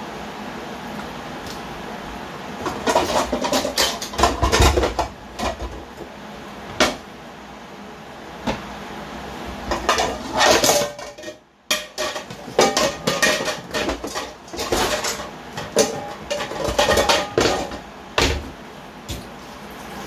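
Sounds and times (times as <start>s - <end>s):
kitchen utensils clattering: 2.6s - 6.1s, 6.7s - 7.0s, 9.6s - 19.2s.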